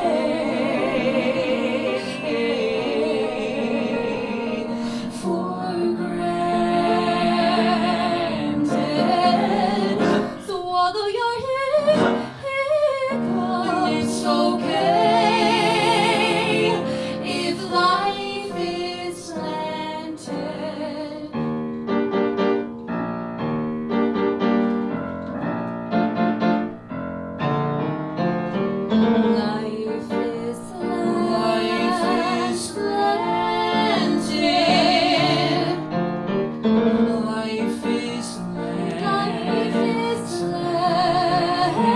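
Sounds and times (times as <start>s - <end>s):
piano accompaniment: 0.0s - 41.9s
woman singing with vibrato: 1.5s - 21.2s.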